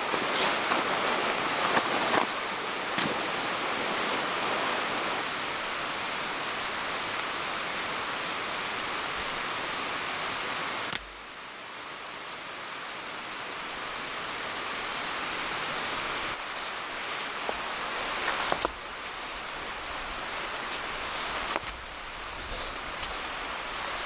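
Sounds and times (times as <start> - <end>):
water rushing: 0.0 - 11.3.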